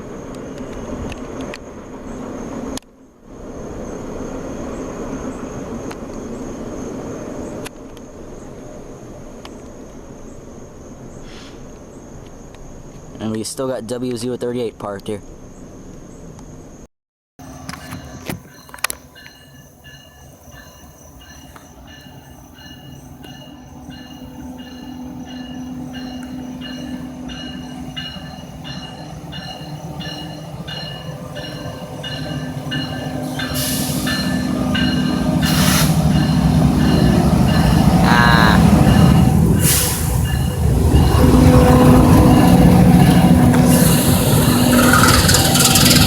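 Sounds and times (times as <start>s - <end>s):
freight train rumble: 17.4s - 46.0s
steel wheels squealing: 17.4s - 46.0s.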